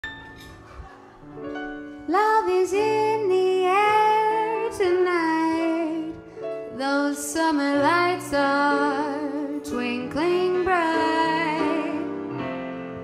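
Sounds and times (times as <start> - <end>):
woman singing: 2.1 - 12.2.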